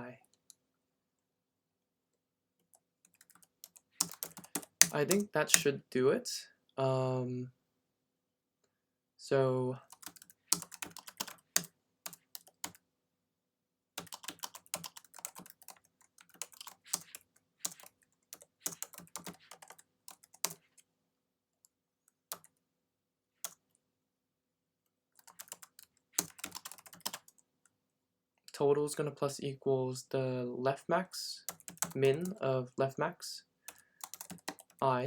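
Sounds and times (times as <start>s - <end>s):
typing on computer keyboard: 3.1s - 5.7s, 9.9s - 12.8s, 14.0s - 20.7s, 25.2s - 27.4s, 31.5s - 32.4s, 33.7s - 34.8s.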